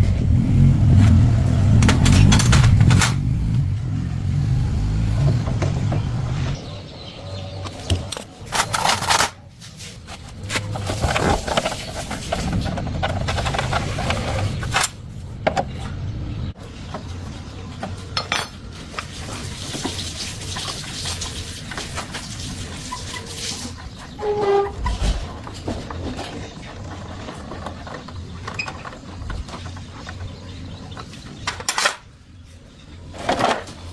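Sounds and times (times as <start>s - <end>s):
metal tools clinking and clattering: 8.2s - 9.4s, 18.2s - 19.1s.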